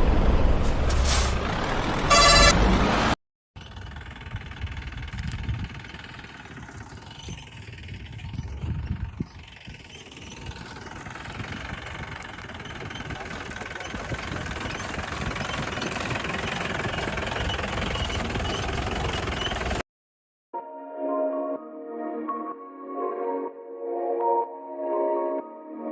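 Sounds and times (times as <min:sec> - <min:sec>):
engine running: 0:00.0 - 0:19.8.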